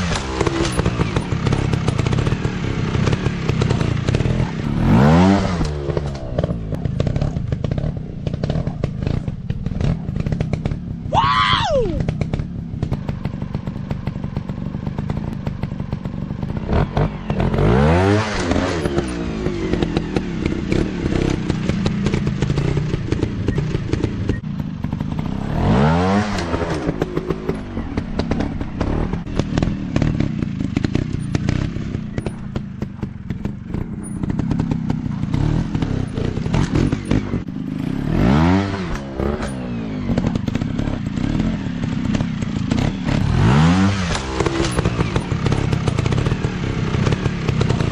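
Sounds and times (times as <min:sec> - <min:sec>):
clicks and clatter: 0:00.0 - 0:02.3, 0:44.0 - 0:46.4
motorcycle engines revving: 0:00.0 - 0:47.9.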